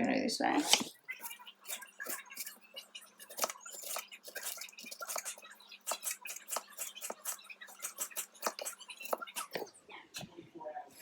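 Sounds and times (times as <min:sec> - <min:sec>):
knife chopping on cutting board: 0:03.3 - 0:05.3, 0:05.9 - 0:09.7.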